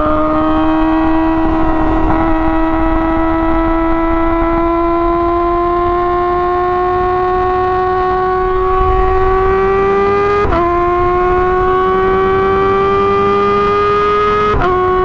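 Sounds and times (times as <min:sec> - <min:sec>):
motorcycle engine wailing at high revs: 0:00.0 - 0:15.0.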